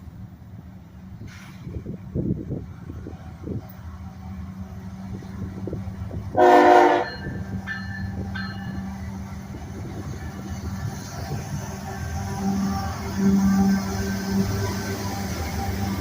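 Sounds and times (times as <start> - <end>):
diesel locomotives running: 0.0 - 16.0
locomotive horn blast: 6.3 - 7.4.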